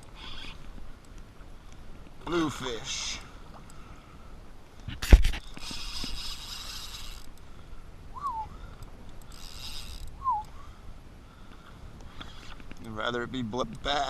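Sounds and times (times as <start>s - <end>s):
fishing reel drag buzzing: 0.0s - 0.7s, 5.4s - 7.7s, 8.3s - 10.6s.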